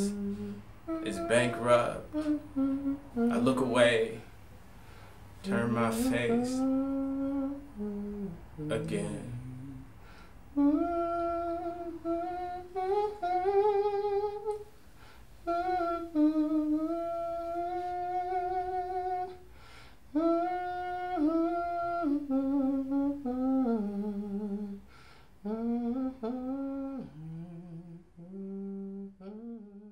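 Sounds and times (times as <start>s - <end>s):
person humming a slow melody: 0.0s - 4.3s, 5.4s - 29.9s.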